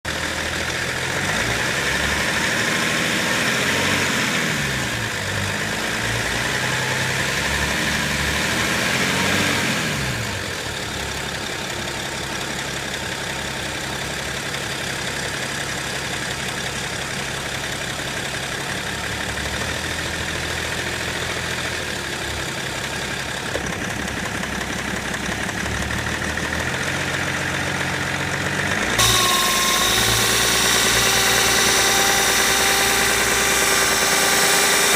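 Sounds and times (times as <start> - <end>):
diesel car engine running: 0.0 - 34.9
high whine: 29.0 - 34.9.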